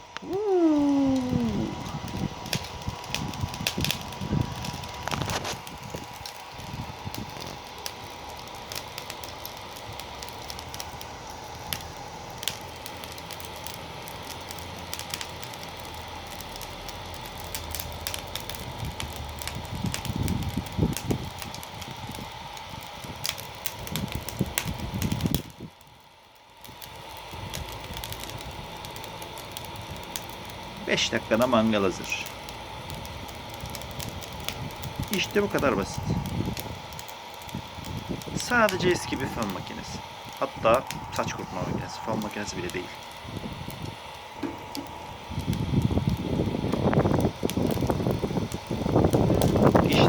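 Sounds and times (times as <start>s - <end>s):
charcoal crackling: 0.0s - 50.0s
fan motor whine: 0.0s - 50.0s
rush of air: 0.2s - 7.6s.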